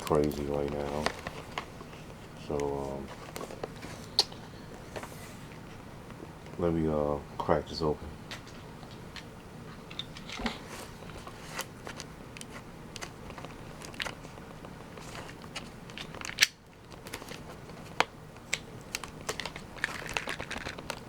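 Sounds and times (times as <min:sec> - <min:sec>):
plastic crackling: 0:00.0 - 0:04.4, 0:10.2 - 0:21.0
cardboard handling: 0:00.0 - 0:05.5.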